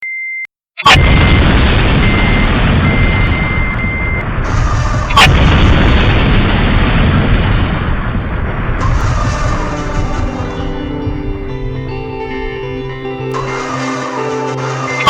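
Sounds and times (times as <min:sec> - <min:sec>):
sharp crack: 0:00.9 - 0:15.0
dense rumbling blast: 0:01.0 - 0:14.2
short high beeps: 0:02.0 - 0:04.2.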